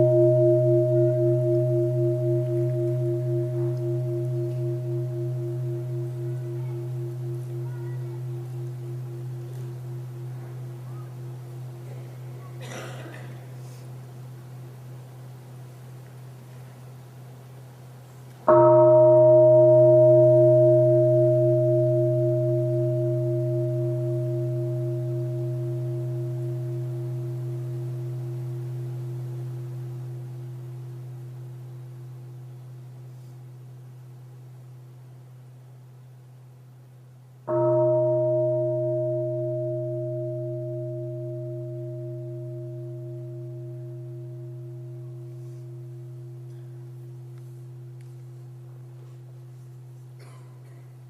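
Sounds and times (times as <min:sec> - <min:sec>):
meditation bell ringing: 0:00.0 - 0:13.2, 0:18.4 - 0:33.0, 0:37.4 - 0:49.4.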